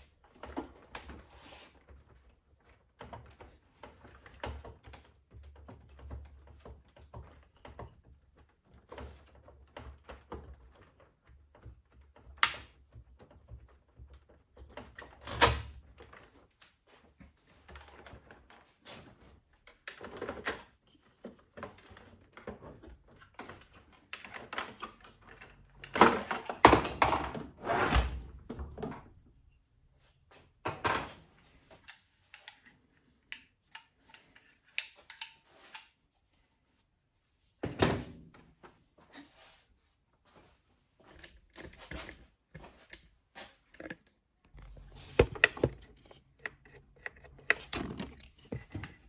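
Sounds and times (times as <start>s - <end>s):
hard parts thunking and clicking: 43.6s - 49.0s.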